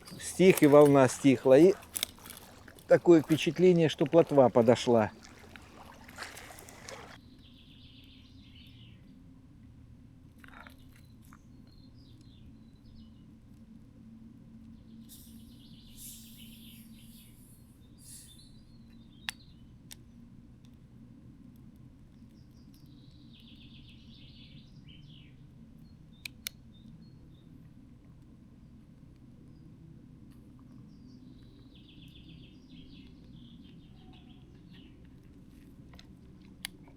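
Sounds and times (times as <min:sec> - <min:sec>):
faint high pips: 0:00.0 - 0:07.2
faint birds chirping: 0:00.0 - 0:09.2, 0:28.5 - 0:36.9
low outdoor background: 0:00.0 - 0:36.9.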